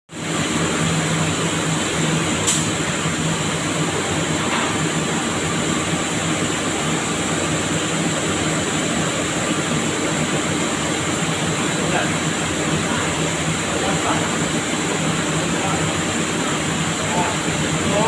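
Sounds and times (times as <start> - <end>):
machine running with hum and whine: 0.1 - 18.0
sharp click: 2.4 - 2.7.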